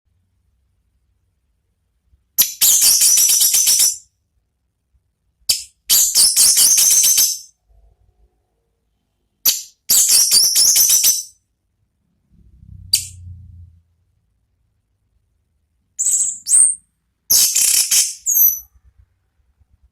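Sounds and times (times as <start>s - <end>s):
bird high-pitched chattering song: 2.4s - 4.0s, 5.5s - 7.5s, 9.4s - 11.3s, 16.0s - 18.7s
faint low rumble: 11.6s - 16.0s.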